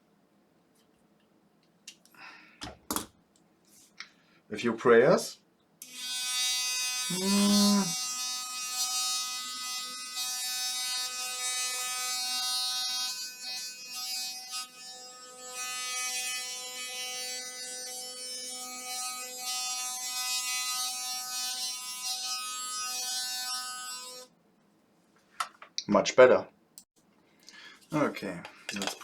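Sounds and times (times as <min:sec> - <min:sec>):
electric toothbrush buzzing: 0:05.8 - 0:24.3.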